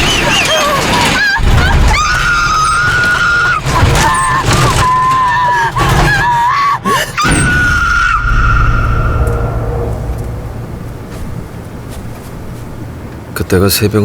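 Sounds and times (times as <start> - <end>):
shrill screeching tones: 7.2 - 12.9
low rumble: 7.6 - 13.3.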